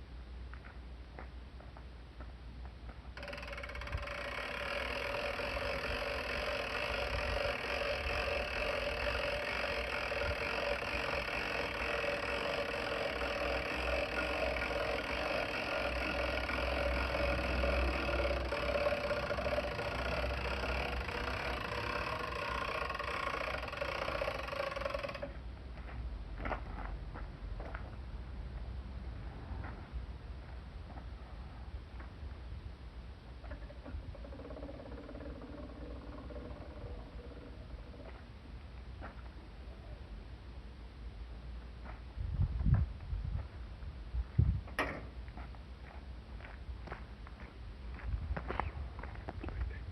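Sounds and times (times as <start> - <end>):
electric winch motor humming: 3.2 - 25.4, 33.5 - 38.2.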